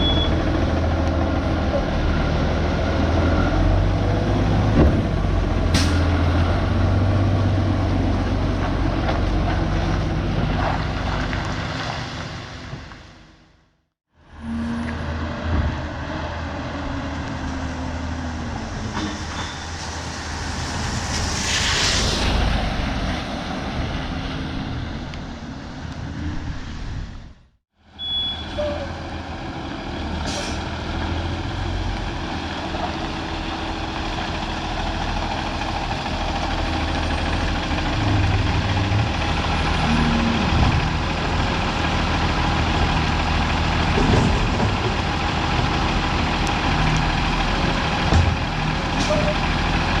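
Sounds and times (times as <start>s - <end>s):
diesel truck engine running: 28.9s - 50.0s.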